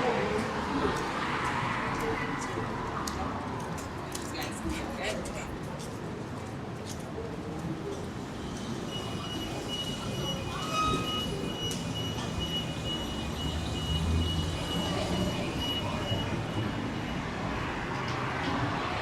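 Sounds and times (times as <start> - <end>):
train rumbling past: 8.1 - 17.1
high-pitched wheel squeal: 8.4 - 17.1.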